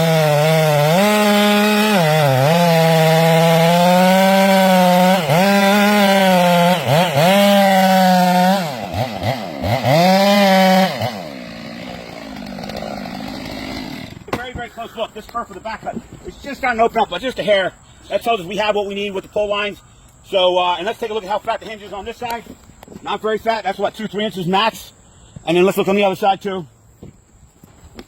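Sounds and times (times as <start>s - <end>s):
chainsaw cutting wood: 0.0s - 14.6s.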